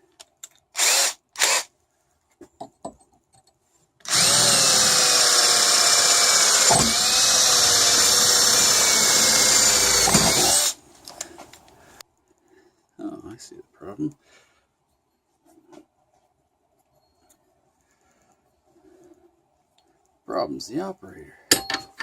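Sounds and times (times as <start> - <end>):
cordless drill drilling into metal: 0.8 - 1.7, 4.0 - 10.8.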